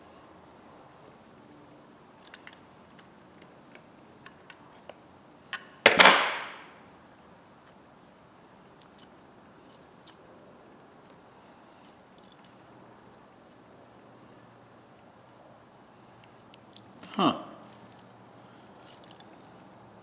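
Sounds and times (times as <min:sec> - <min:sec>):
sharp metallic clank: 0:05.6 - 0:06.8.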